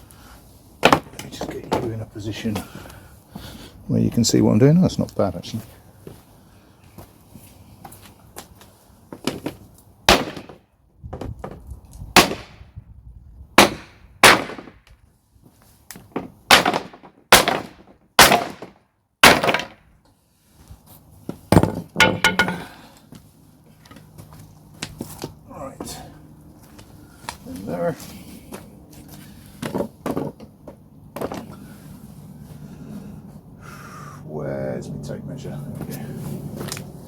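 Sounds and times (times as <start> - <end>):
hammer striking timber: 0.8 - 1.1, 10.1 - 10.6, 12.2 - 12.6, 13.6 - 14.8, 16.2 - 19.8, 21.5 - 22.7.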